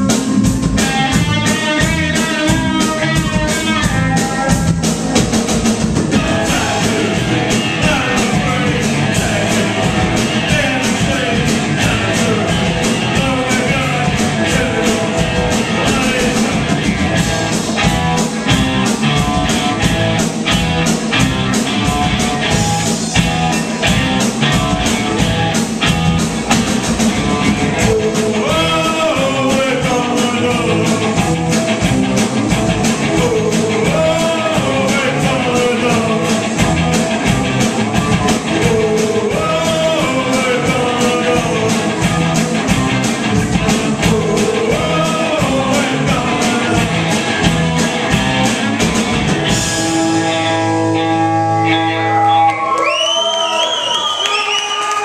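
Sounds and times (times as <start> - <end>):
drums steady beat: 0.0 - 51.0
live rock band playing: 0.0 - 53.0
lead vocal singing: 0.8 - 19.2, 27.1 - 49.8.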